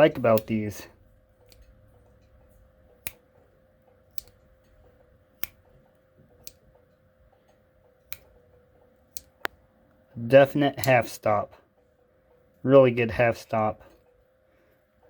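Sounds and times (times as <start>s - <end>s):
pocketknife blade snapping clicks: 4.2s - 4.4s, 8.1s - 8.3s.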